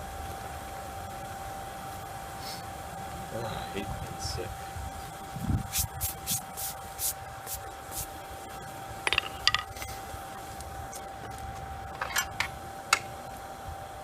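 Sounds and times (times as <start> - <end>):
steady high hum: 0.0 - 14.0
metal tools clinking on steel: 9.0 - 10.1, 11.9 - 13.1.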